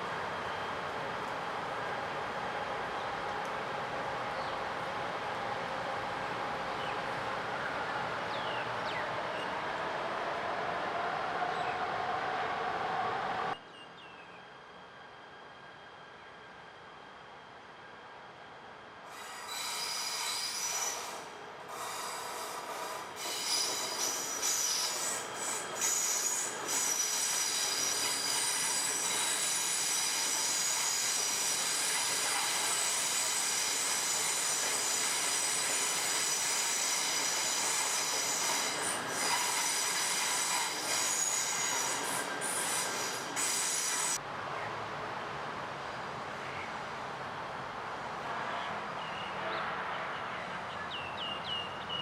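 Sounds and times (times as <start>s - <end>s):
train brakes squealing: 19.1s - 44.2s.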